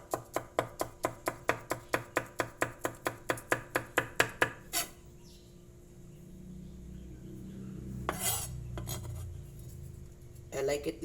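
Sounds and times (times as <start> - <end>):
knife chopping green onions: 0.0 - 4.9.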